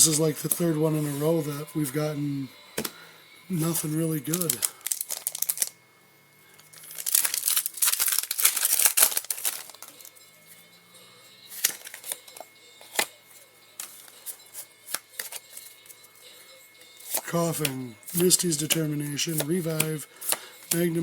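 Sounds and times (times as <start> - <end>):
foil wrapper tearing and crinkling: 4.2 - 5.7, 6.6 - 10.1.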